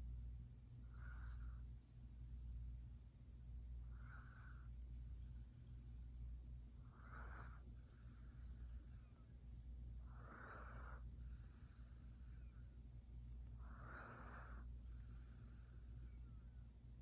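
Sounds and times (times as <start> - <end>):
cat snoring softly: 0.8 - 1.8, 3.8 - 4.9, 6.8 - 9.2, 10.0 - 12.6, 13.4 - 16.4
hissy breath: 13.6 - 16.2.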